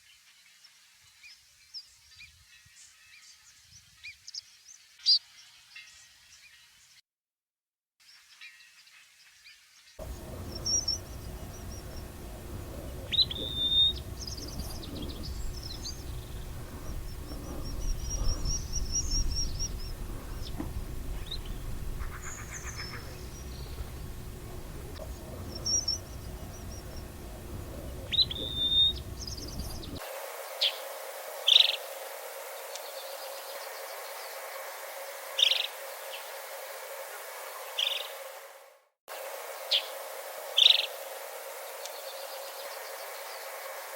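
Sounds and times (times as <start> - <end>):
low wind rumble: 10.0 - 30.0
sharp falling bird calls: 10.0 - 30.0
birds calling high notes: 10.0 - 30.9.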